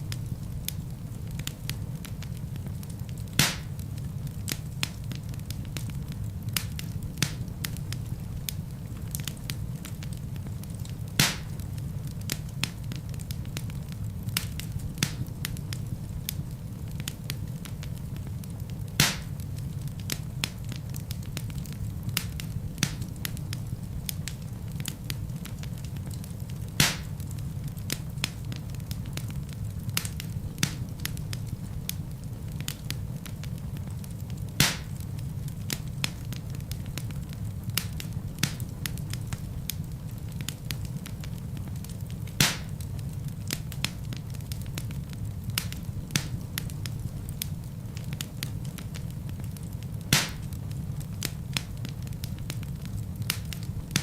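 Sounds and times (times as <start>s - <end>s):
fire popping: 0.0s - 54.0s
wood fire crackling: 0.0s - 54.0s.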